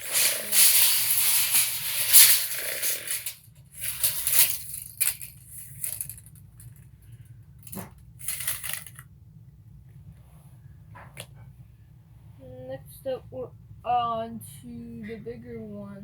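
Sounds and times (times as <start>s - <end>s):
tape measure metallic rattle: 0.0s - 6.8s, 7.6s - 9.0s.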